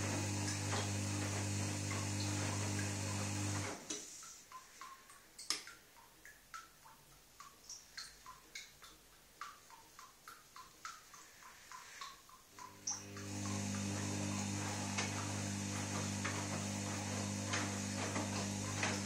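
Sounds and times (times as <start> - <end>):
washing machine motor: 0.0 - 3.9, 12.6 - 19.0
light ticks from wet drum: 3.9 - 13.9.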